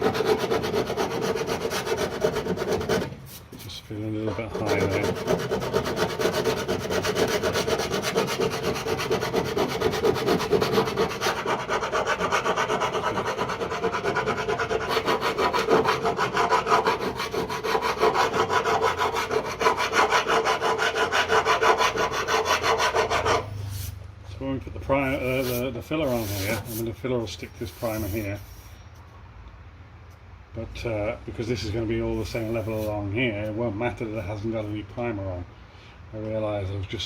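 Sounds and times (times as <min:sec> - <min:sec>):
hand file rasping on steel: 0:00.0 - 0:03.2, 0:04.2 - 0:23.6, 0:25.0 - 0:26.9, 0:27.6 - 0:28.4.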